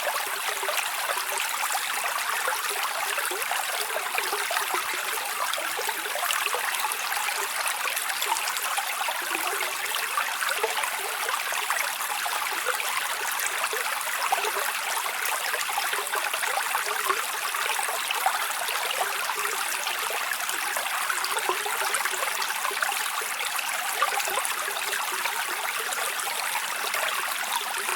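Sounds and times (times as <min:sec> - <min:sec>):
stream of water trickling: 0:00.0 - 0:27.9.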